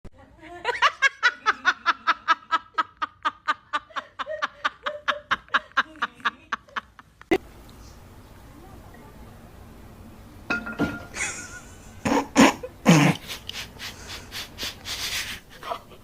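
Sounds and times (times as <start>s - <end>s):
person laughing: 1.4s - 7.4s, 11.2s - 16.0s.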